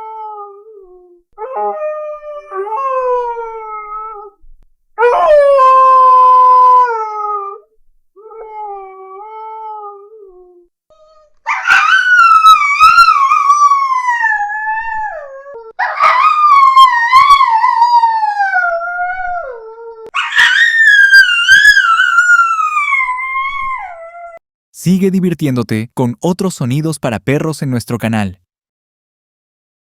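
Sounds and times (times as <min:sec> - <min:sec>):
dog howling: 0:00.0 - 0:04.4, 0:05.0 - 0:24.4.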